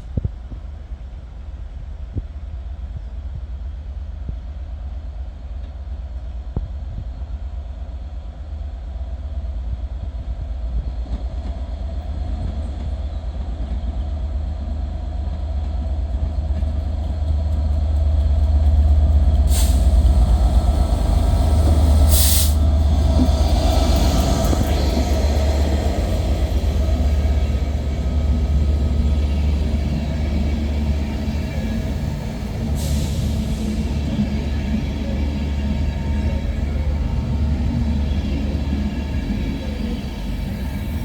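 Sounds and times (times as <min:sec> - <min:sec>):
train rumbling: 0:00.0 - 0:41.0
short hisses: 0:19.5 - 0:24.4.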